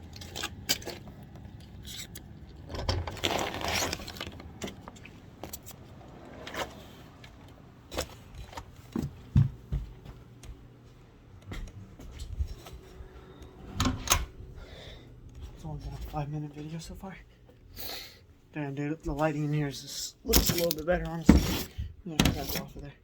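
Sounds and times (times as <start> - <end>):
dull thumps: 9.0 - 10.2.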